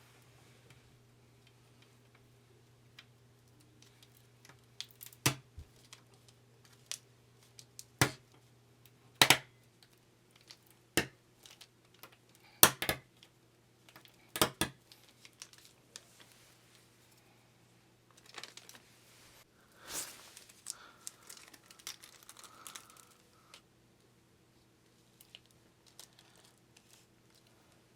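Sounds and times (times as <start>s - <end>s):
faint low hum: 0.0s - 27.9s.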